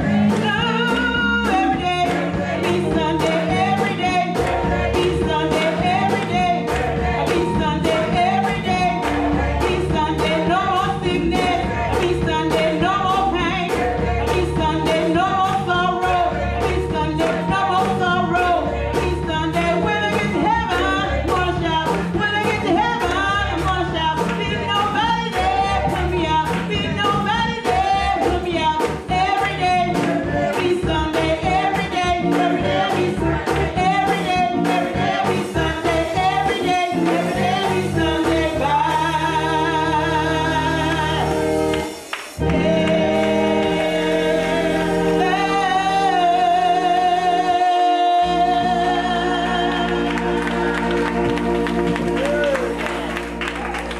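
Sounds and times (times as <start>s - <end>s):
drum beat: 0.0s - 39.2s
band accompaniment: 0.0s - 53.9s
gospel choir singing: 0.0s - 53.9s.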